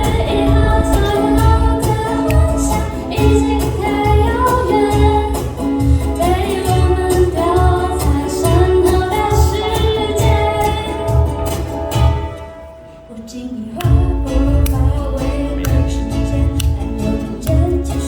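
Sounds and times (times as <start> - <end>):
drums keeping a steady beat: 0.0 - 8.7
ukuleles: 0.0 - 18.0
women singing: 0.0 - 18.0.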